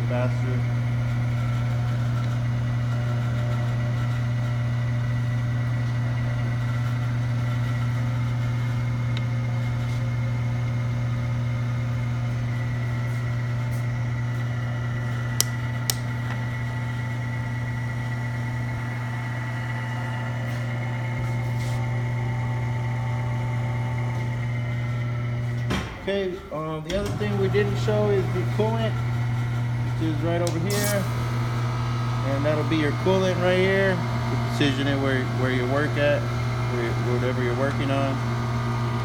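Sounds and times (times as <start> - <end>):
lathe motor humming: 0.0 - 39.0
sharp clicks: 15.4 - 16.1.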